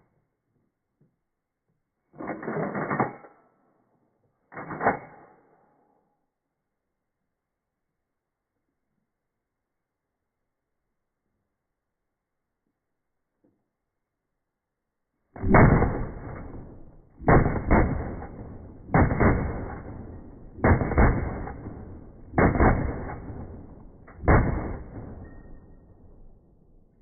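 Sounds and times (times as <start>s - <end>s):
rifle shots booming: 15.4s - 26.3s.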